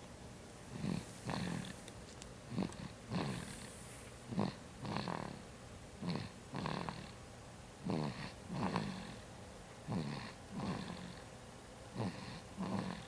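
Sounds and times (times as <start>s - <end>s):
baby snoring: 0.7s - 1.8s, 2.5s - 5.4s, 6.0s - 7.2s, 7.8s - 9.2s, 9.9s - 11.2s, 12.0s - 13.0s.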